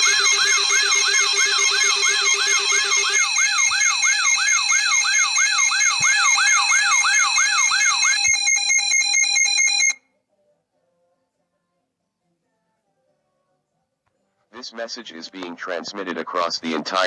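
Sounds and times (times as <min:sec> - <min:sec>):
steady high alarm tones: 0:00.0 - 0:10.0
warbling alarm siren: 0:00.0 - 0:10.0.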